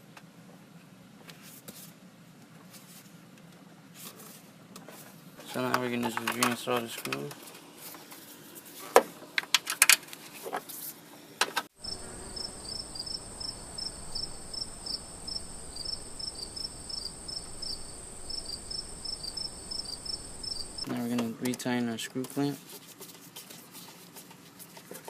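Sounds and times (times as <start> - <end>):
crickets chirping: 11.8 - 20.9
insects trilling: 11.8 - 20.9.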